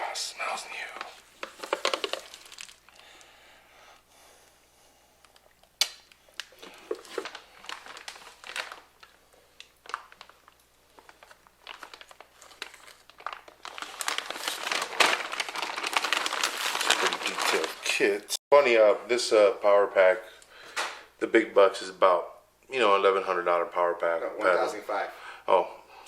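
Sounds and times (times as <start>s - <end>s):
plastic packaging crinkling: 0.7s - 3.1s, 5.8s - 18.2s.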